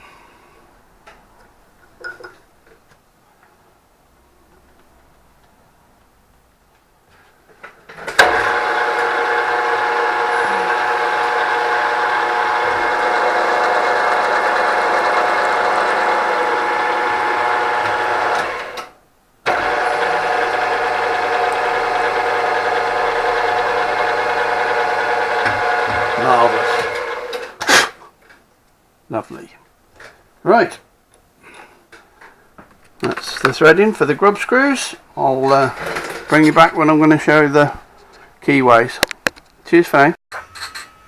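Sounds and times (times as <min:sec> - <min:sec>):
machine tool humming: 0:08.2 - 0:18.9, 0:19.5 - 0:27.6.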